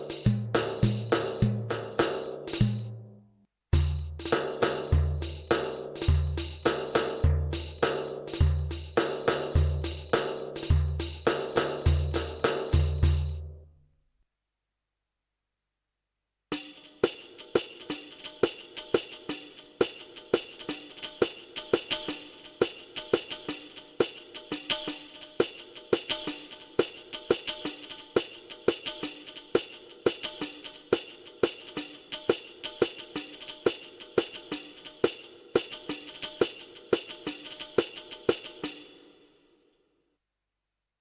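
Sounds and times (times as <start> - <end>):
jingly percussion pad rhythm: 0.0 - 3.0, 3.8 - 13.4.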